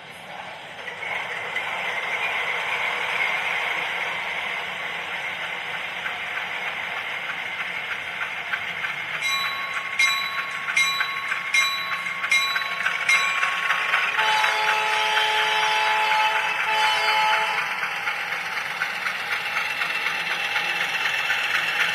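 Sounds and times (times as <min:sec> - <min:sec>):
model locomotive engine sound: 0:00.0 - 0:21.9
locomotive bell ringing: 0:09.2 - 0:18.5.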